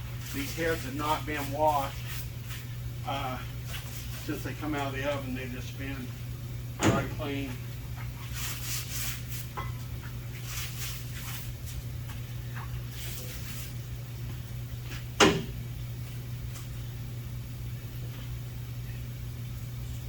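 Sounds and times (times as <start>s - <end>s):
workshop handling noises: 0.0s - 6.2s, 6.8s - 15.6s
steady low hum: 0.0s - 20.0s.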